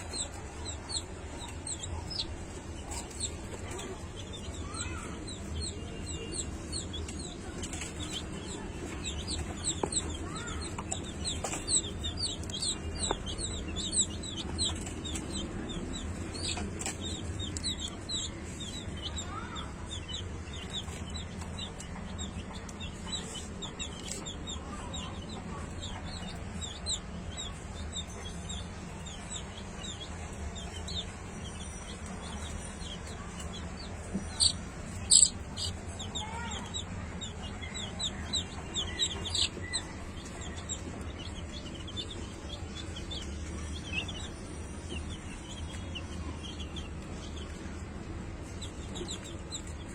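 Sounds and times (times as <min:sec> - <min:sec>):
chickens clucking: 0:00.0 - 0:49.9
steady low hum: 0:00.0 - 0:49.9
high falling chirps: 0:30.6 - 0:36.5.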